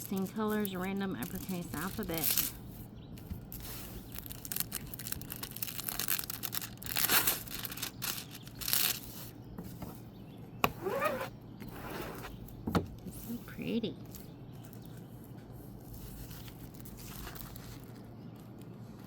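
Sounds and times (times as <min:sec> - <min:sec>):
plastic packaging crinkling: 0:00.0 - 0:09.4, 0:15.7 - 0:18.9.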